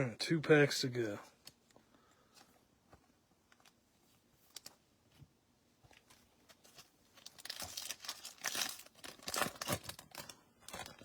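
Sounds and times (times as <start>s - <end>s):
wrapper tearing and crinkling: 6.6s - 11.0s.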